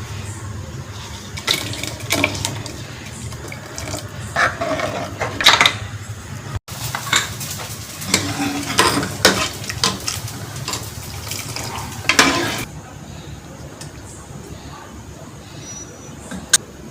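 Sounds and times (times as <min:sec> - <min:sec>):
frying sizzle: 0:00.0 - 0:12.7
metal spoon scraping a pan: 0:00.9 - 0:05.8, 0:06.9 - 0:12.7.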